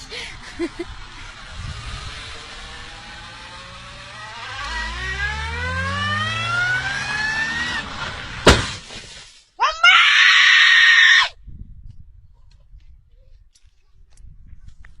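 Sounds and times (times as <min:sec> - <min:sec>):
car engine revving: 0:00.0 - 0:09.2
car crash impact: 0:07.4 - 0:09.5
loud scream: 0:09.6 - 0:11.4.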